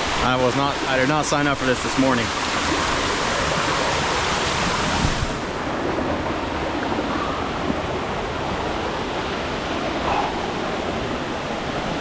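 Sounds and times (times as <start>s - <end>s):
water rushing: 0.0s - 12.0s.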